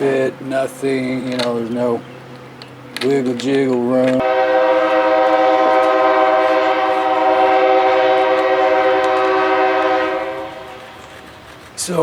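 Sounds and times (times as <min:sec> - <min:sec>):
sustained horn chord: 0:04.2 - 0:11.4.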